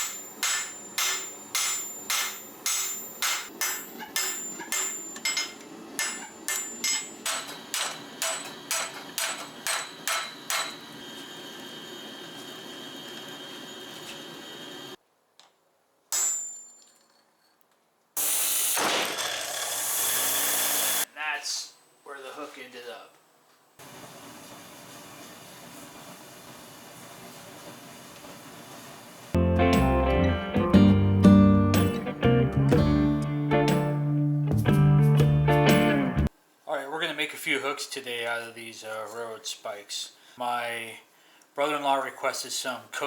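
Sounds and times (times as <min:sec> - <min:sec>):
hammer striking steel on anvil: 0:00.0 - 0:11.0, 0:16.1 - 0:16.9.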